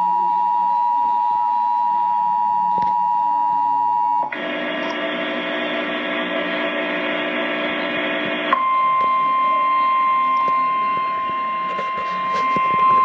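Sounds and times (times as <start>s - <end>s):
two-tone attention beep: 8.6s - 13.0s.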